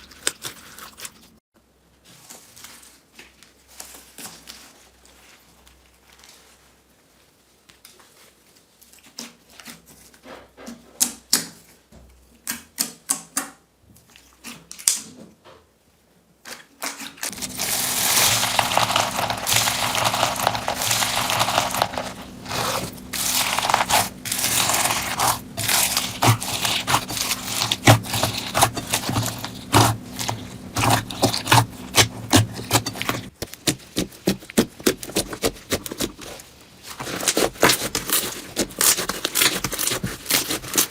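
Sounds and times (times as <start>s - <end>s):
low steady hum: 17.3s - 33.3s
slime squished by hand crackling: 17.4s - 36.1s.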